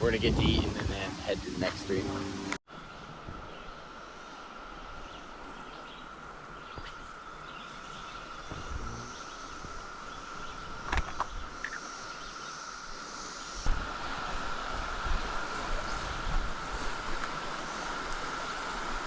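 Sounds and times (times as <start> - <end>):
faint hiss: 0.0 - 2.6
cicada chorus droning: 3.8 - 13.7.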